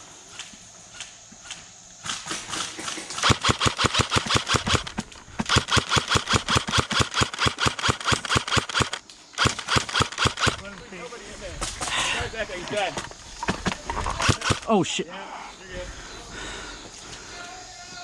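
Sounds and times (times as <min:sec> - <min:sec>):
airsoft gun firing: 0:01.0 - 0:10.8, 0:12.0 - 0:14.7.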